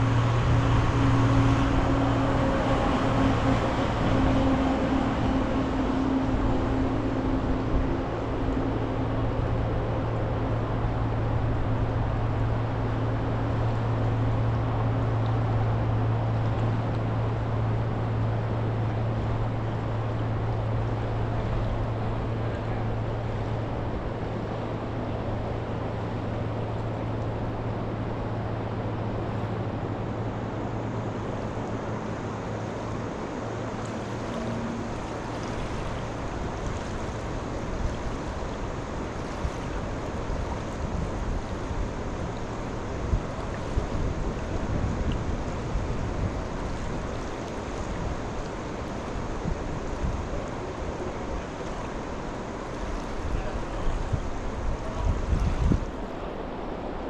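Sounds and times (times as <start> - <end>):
low steady hum: 0.0 - 57.0
river water rushing: 0.0 - 57.0
wind gusting on microphone: 35.7 - 57.0.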